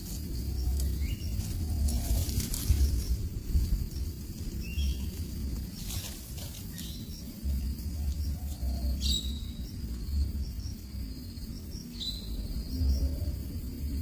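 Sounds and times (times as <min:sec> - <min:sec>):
high insect drone: 0:00.0 - 0:14.0
wind rumble on microphone: 0:00.0 - 0:14.0
bird chirps: 0:06.7 - 0:09.8.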